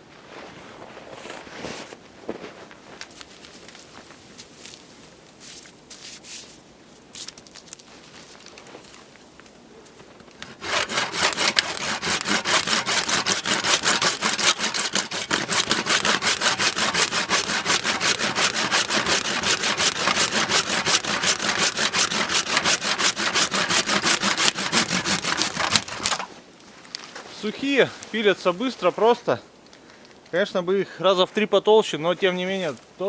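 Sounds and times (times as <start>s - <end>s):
hand saw cutting branches: 10.4s - 26.3s.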